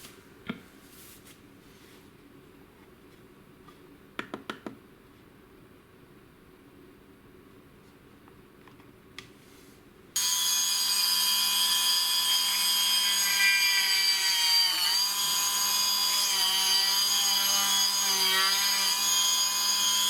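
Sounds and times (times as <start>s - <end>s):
electric drill whining: 10.2s - 20.0s.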